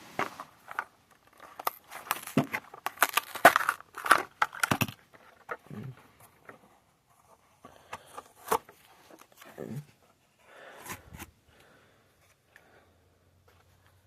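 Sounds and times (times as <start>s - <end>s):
plastic blister pack crackling: 0.2s - 5.9s.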